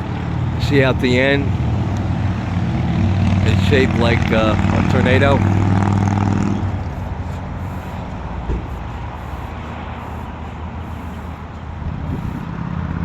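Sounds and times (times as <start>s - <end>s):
low engine hum: 0.0s - 13.0s
road noise hiss: 0.0s - 13.0s.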